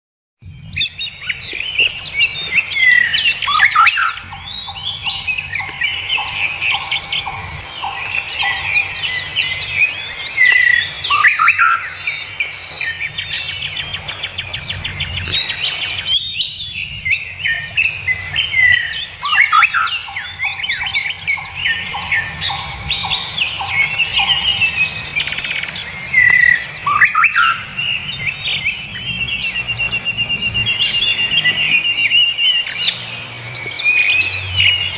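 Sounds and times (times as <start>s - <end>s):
chorus of songbirds chirping: 0.4s - 34.9s.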